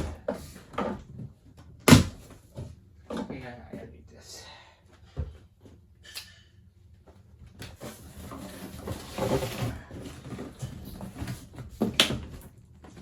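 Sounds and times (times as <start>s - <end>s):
packaging rustling and scraping: 7.7s - 12.0s.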